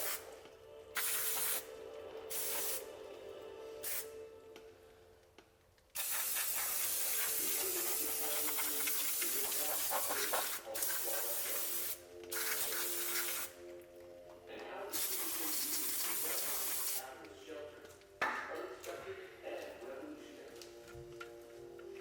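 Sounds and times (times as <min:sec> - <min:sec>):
aerosol spray hissing: 0:00.0 - 0:00.3, 0:01.0 - 0:01.7, 0:02.3 - 0:02.9, 0:03.8 - 0:04.1, 0:06.0 - 0:13.6, 0:14.9 - 0:17.0
quiet background music: 0:00.0 - 0:22.0.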